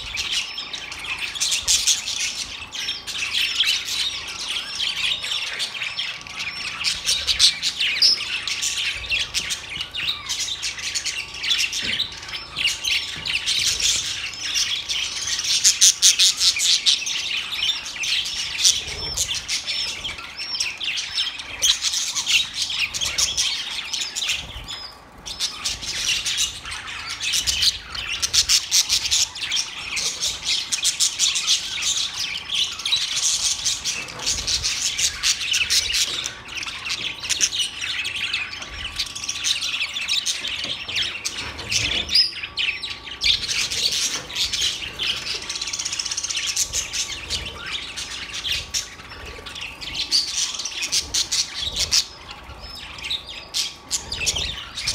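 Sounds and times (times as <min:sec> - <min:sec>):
birds chirping: 0:00.0 - 0:54.9.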